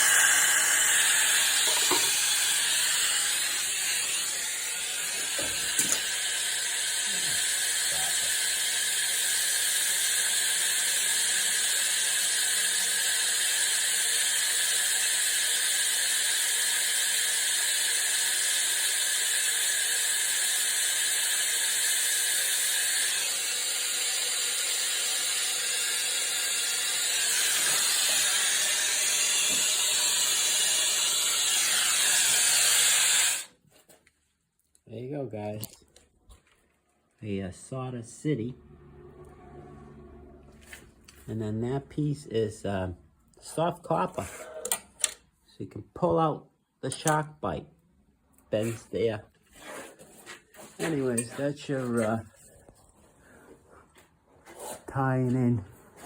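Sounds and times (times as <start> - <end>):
torch flame hissing: 0.0 - 33.5.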